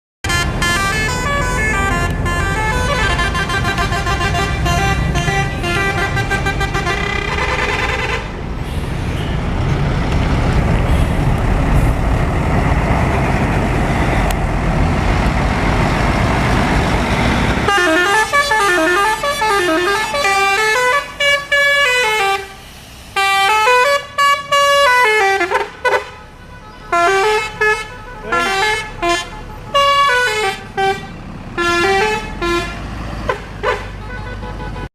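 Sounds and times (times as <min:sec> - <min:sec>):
melodic bus horns: 0:00.2 - 0:09.6, 0:17.1 - 0:34.9
loud rushing noise: 0:07.8 - 0:17.7.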